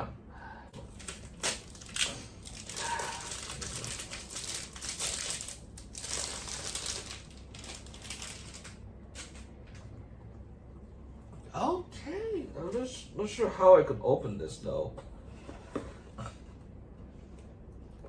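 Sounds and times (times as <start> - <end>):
packaging crinkling: 0.8 - 9.4.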